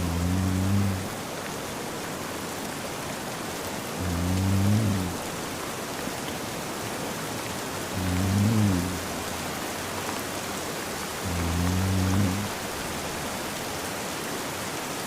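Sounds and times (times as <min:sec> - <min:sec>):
man snoring: 0:00.0 - 0:01.2, 0:04.0 - 0:05.3, 0:07.9 - 0:09.4, 0:11.2 - 0:12.6
steady rain: 0:00.0 - 0:15.0.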